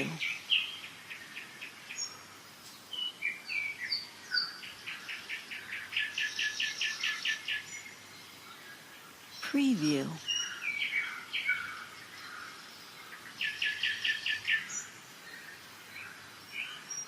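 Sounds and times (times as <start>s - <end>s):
songbirds singing: 0.0s - 17.0s.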